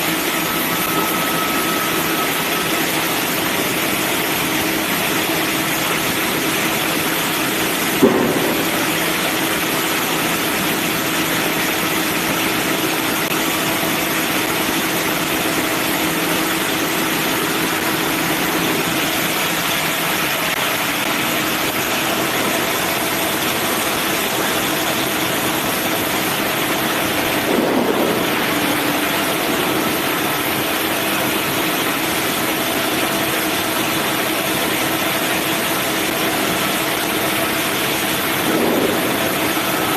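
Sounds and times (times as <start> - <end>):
bandsaw humming: 0.0 - 39.9.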